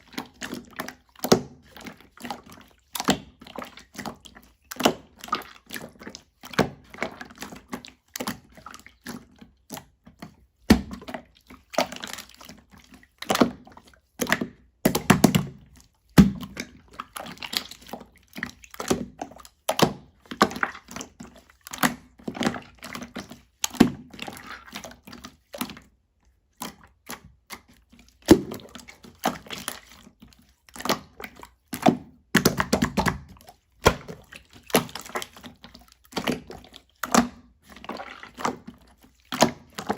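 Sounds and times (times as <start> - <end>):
slime squelching and popping: 0.0 - 39.9.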